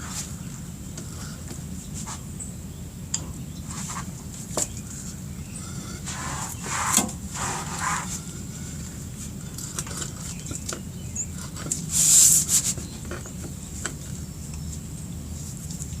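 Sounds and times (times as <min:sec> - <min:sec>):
short scraping noises: 0:03.7 - 0:04.1, 0:05.6 - 0:09.4, 0:11.8 - 0:13.0.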